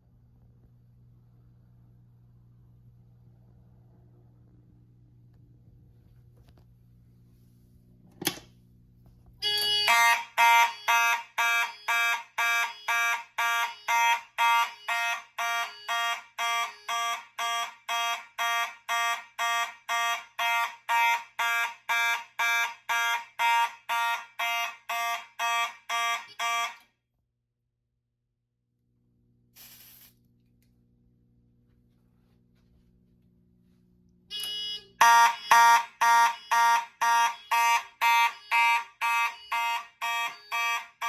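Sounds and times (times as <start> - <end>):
fire alarm horns pulsing: 9.4 - 26.9, 34.3 - 41.0.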